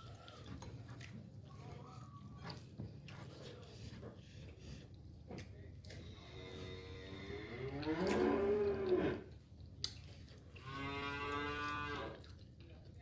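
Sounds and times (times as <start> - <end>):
cow mooing: 6.5 - 9.2, 10.6 - 12.1.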